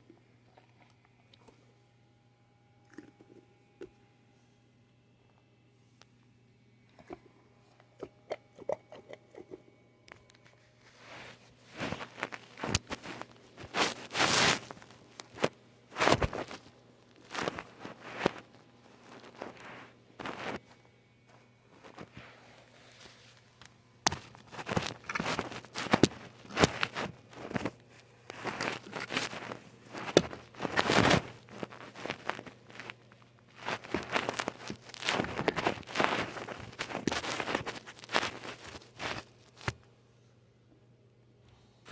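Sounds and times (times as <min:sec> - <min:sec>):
rustling and scraping: 0:10.4 - 0:39.8.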